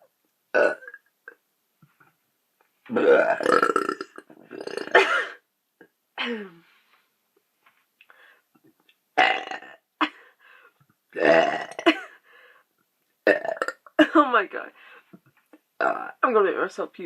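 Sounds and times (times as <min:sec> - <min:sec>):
woman burping loudly: 0:00.5 - 0:01.4, 0:02.9 - 0:05.4, 0:09.2 - 0:10.2, 0:11.2 - 0:12.2, 0:13.2 - 0:14.2.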